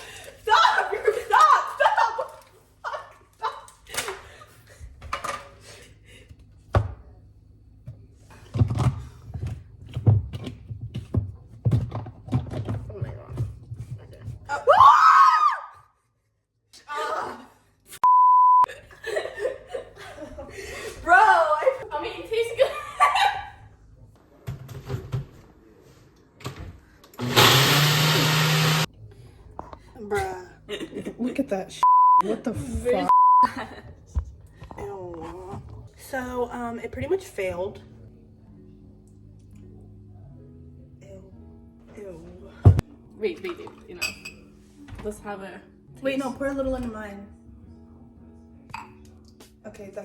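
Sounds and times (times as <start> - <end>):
blender motor running: 27.2 - 28.9.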